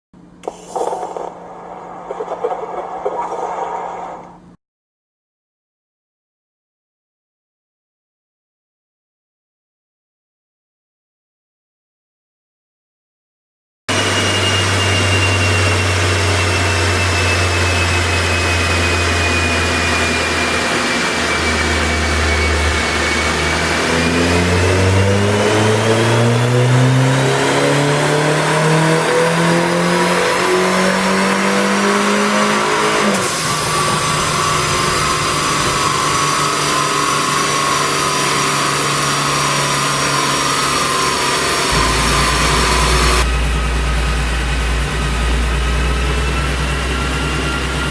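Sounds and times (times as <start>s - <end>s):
high whine: 0.2s - 4.6s, 13.9s - 27.9s, 29.5s - 47.9s
car engine revving on dyno: 13.9s - 47.9s.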